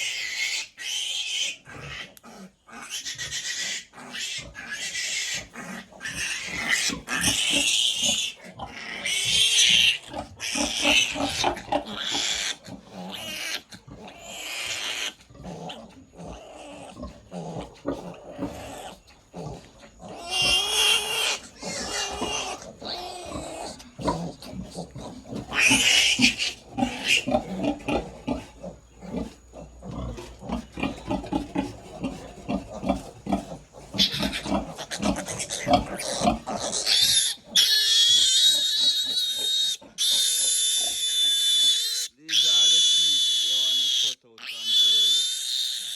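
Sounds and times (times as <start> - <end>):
piglet grunting: 0.0 - 45.9
piglet squealing: 2.7 - 15.2, 20.1 - 23.8, 25.5 - 27.8, 33.9 - 45.9.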